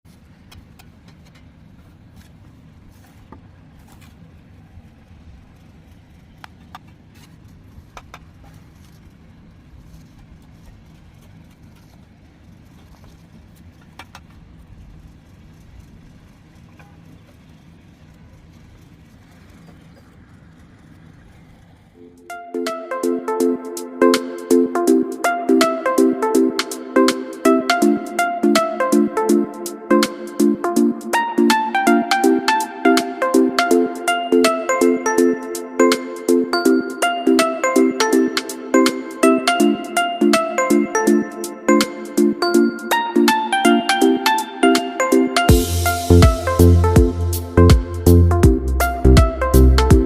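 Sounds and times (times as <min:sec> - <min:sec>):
steady low rumble: 0:45.5 - 0:50.0.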